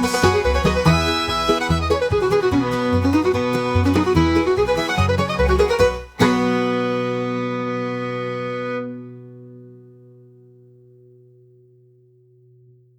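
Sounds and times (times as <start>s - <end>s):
bluegrass instrumental music: 0.0s - 10.1s.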